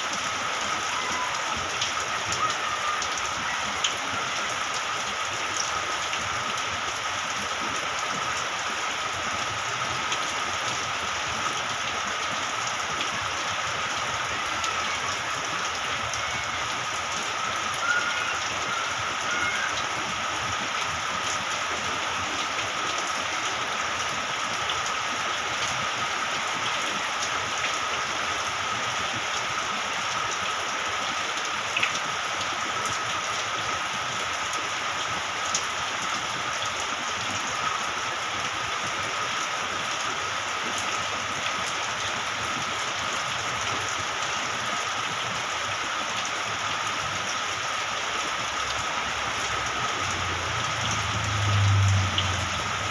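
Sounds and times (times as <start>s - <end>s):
rain pattering on surfaces: 0.0s - 52.9s.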